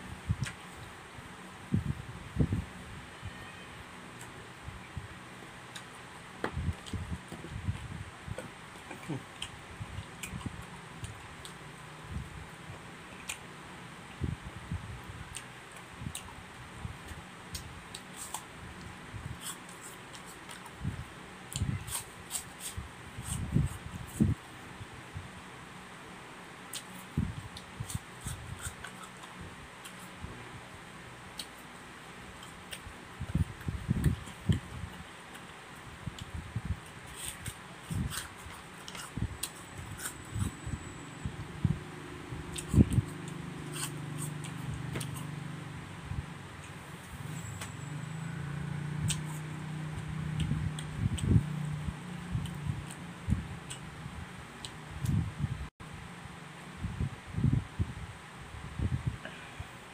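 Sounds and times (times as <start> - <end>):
low steady hum: 0.0 - 59.9
fruit being chewed: 8.8 - 11.6, 17.1 - 20.8, 21.5 - 24.4, 26.7 - 30.2, 32.4 - 45.7, 46.6 - 54.0.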